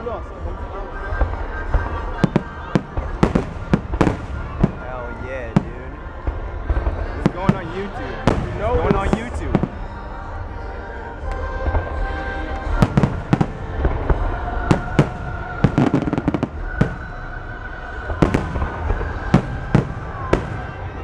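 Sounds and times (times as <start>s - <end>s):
fireworks bangs: 0.9s - 10.1s, 11.2s - 21.0s.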